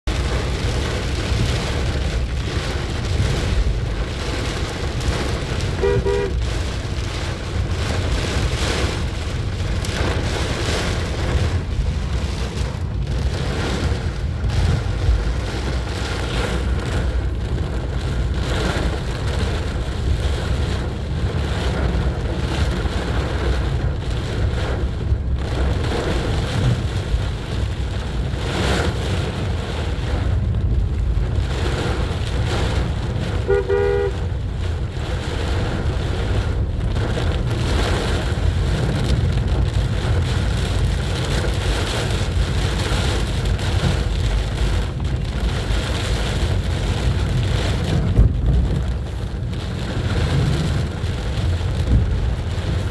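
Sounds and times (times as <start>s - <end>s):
low road rumble: 0.0s - 52.9s
rain and tyre spray: 0.0s - 52.9s
car horn toot: 5.8s - 6.4s, 33.4s - 34.3s.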